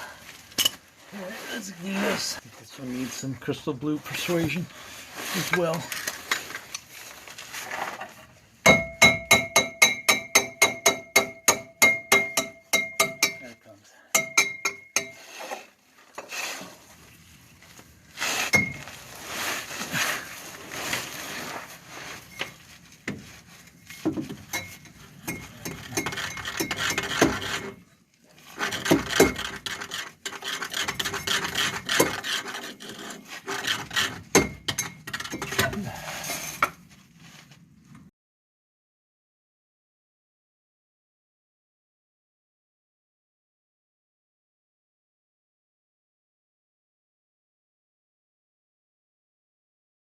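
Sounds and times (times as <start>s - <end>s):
clinks and knocks: 24.0s - 27.7s, 34.3s - 35.8s
hand tool rasping on metal: 24.6s - 27.8s, 28.4s - 35.7s.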